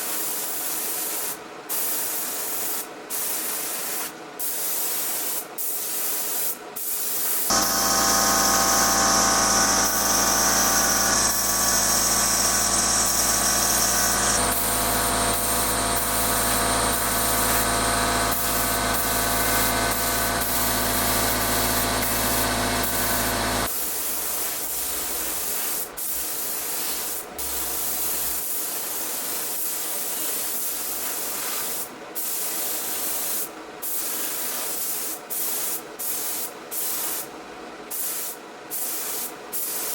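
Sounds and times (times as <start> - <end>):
spray gun hissing: 0.0 - 37.3, 37.9 - 39.9
motor hum with whine: 7.5 - 23.7.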